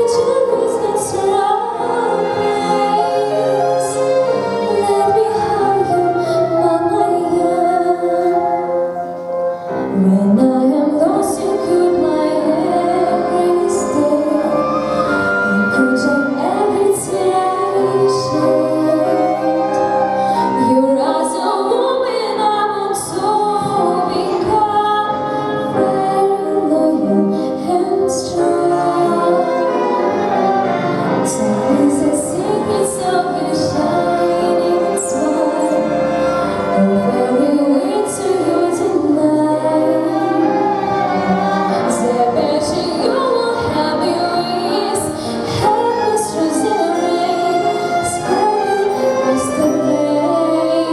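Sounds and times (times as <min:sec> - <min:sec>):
woman singing: 0:00.0 - 0:09.0, 0:09.9 - 0:30.3, 0:31.1 - 0:50.9
school orchestra playing: 0:00.0 - 0:22.5, 0:23.7 - 0:50.9.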